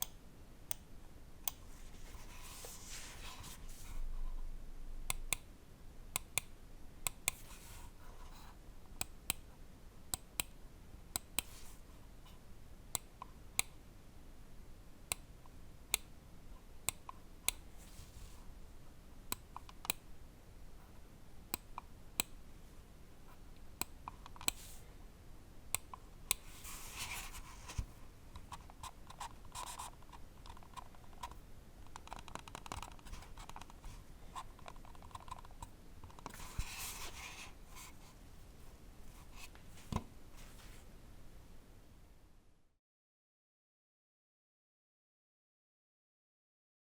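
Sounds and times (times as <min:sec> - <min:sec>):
mouse switches clicking: 0:00.0 - 0:01.7, 0:05.1 - 0:05.5, 0:06.1 - 0:07.5, 0:09.0 - 0:09.5, 0:19.3 - 0:20.0, 0:23.8 - 0:24.7.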